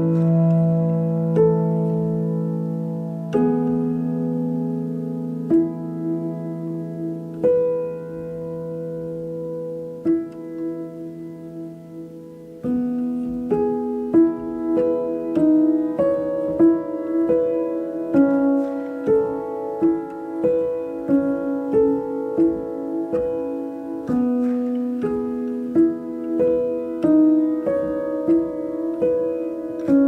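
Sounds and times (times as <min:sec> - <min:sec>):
solo piano playing: 0:00.0 - 0:30.0.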